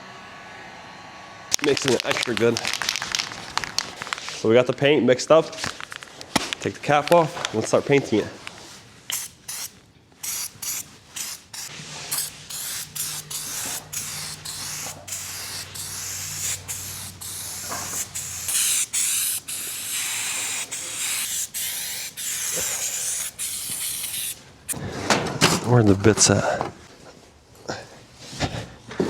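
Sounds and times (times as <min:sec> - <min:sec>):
spray can hissing: 0:01.5 - 0:04.4, 0:09.1 - 0:24.4.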